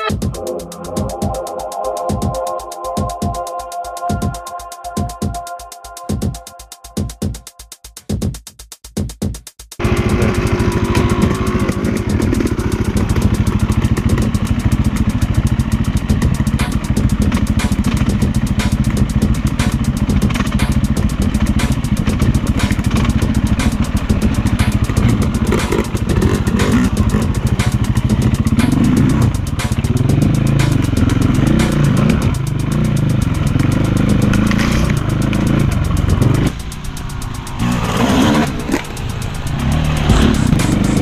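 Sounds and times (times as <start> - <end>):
electronic music: 0.0 - 8.1, 9.8 - 41.0
dirt bike engine under throttle: 9.8 - 41.0.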